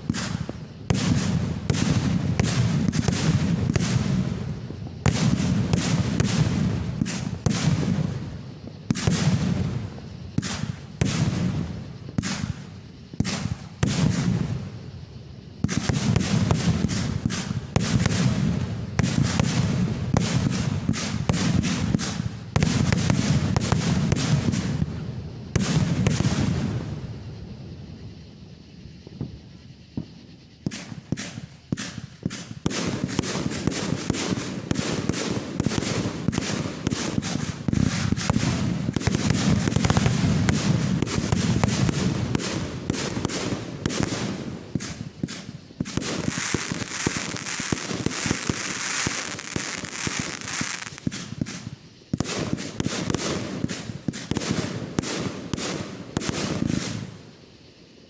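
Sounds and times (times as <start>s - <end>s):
fireworks popping and crackling: 0.0s - 57.6s.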